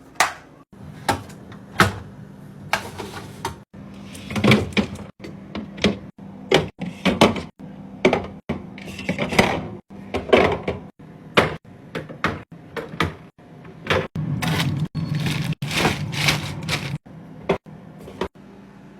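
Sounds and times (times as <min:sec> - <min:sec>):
items set into refrigerator: 0:00.1 - 0:05.1, 0:13.9 - 0:17.0.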